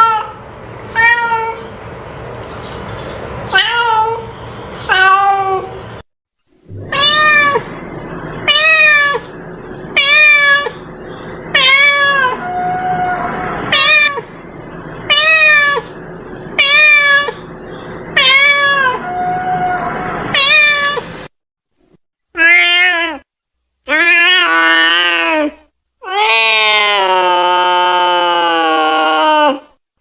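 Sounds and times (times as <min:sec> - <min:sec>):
cat meowing: 0:06.8 - 0:07.8, 0:08.4 - 0:09.3, 0:10.0 - 0:10.8, 0:11.5 - 0:14.3, 0:15.1 - 0:15.9, 0:16.6 - 0:17.5, 0:18.2 - 0:21.1, 0:22.4 - 0:23.3, 0:23.9 - 0:28.4.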